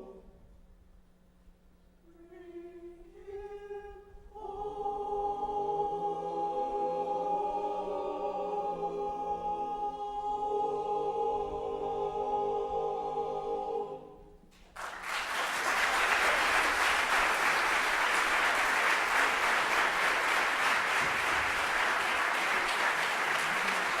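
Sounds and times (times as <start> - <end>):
audience applause: 14.8 - 24.0.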